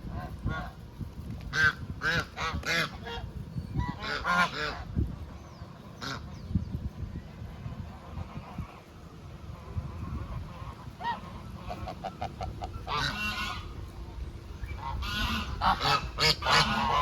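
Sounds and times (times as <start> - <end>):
geese honking: 1.5 - 5.0, 5.9 - 6.4, 7.6 - 13.9, 14.6 - 17.0.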